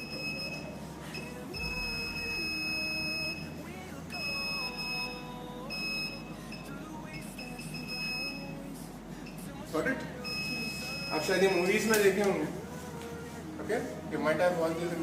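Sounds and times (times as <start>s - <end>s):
security alarm buzzer tone: 0.0s - 6.8s, 7.4s - 8.6s, 10.2s - 11.9s.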